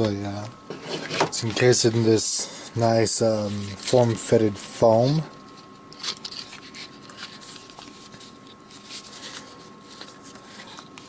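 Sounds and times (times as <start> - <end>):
faint electrical hum: 0.0 - 11.0
packaging rustling: 5.5 - 11.0.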